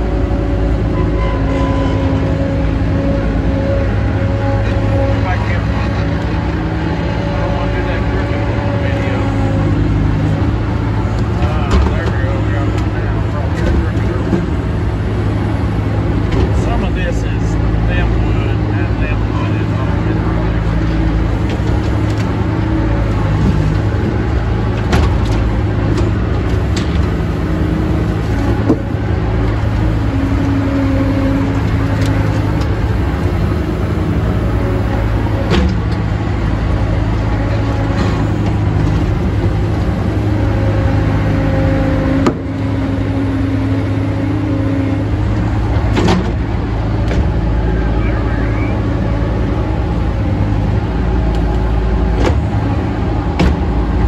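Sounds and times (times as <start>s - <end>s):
firewood processor humming: 0.0s - 54.0s.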